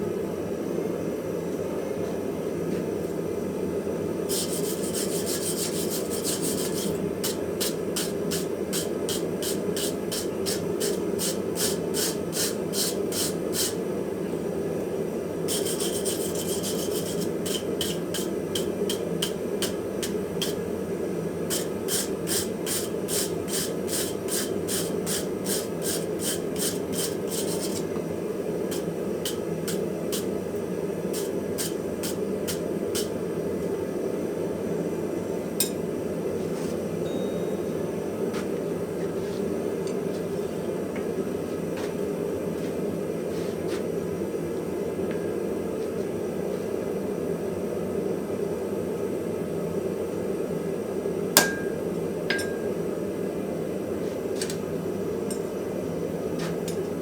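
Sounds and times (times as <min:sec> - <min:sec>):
hand file rasping on steel: 0:04.3 - 0:13.8, 0:15.5 - 0:20.6, 0:21.5 - 0:27.9, 0:28.7 - 0:30.3.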